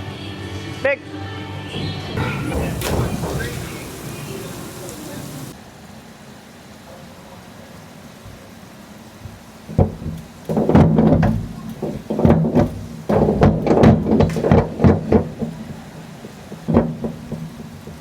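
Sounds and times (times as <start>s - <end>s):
springboard knocks and thuds: 1.8s - 4.9s, 9.7s - 18.0s.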